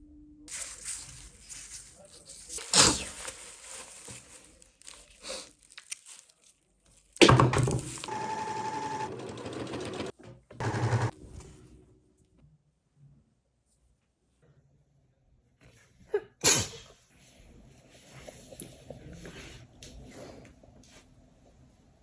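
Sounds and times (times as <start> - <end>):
sewing machine stitching: 8.1 - 11.2.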